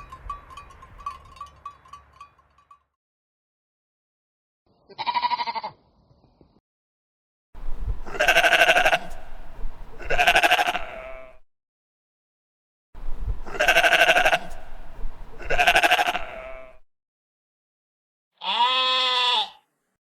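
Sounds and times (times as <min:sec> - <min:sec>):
sheep bleating: 0:04.9 - 0:05.8, 0:08.0 - 0:09.4, 0:10.0 - 0:11.4, 0:13.4 - 0:14.8, 0:15.4 - 0:16.8, 0:18.4 - 0:19.6.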